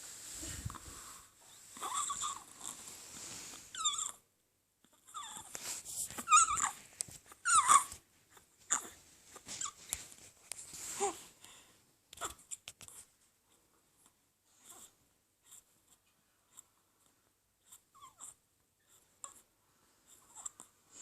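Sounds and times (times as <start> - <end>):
high-pitched squeaky breaths: 0.4 - 2.8, 3.6 - 4.2, 5.1 - 8.0.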